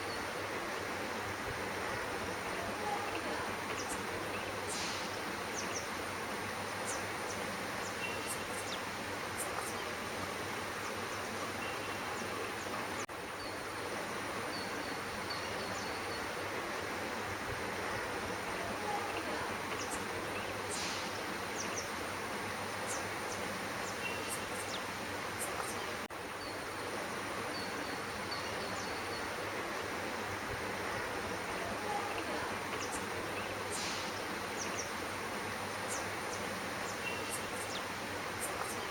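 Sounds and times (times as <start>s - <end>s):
outdoor background hiss: 0.0s - 38.9s
small birds chirping: 30.9s - 35.1s, 35.8s - 38.9s.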